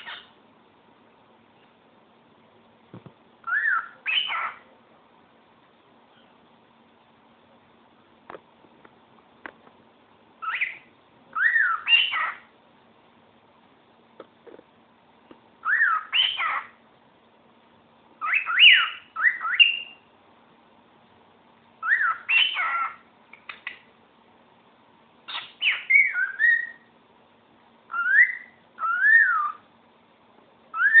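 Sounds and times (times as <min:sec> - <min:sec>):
cockatiel whistling: 0:00.0 - 0:00.3, 0:03.4 - 0:04.6, 0:10.4 - 0:12.4, 0:15.6 - 0:16.7, 0:18.2 - 0:20.0, 0:21.8 - 0:23.0, 0:25.3 - 0:26.9, 0:27.9 - 0:29.6, 0:30.7 - 0:31.0.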